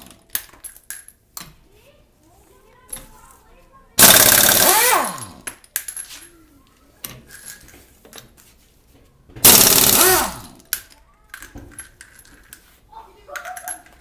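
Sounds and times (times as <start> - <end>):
pneumatic impact wrench hammering: 4.0 - 5.4, 9.4 - 10.6.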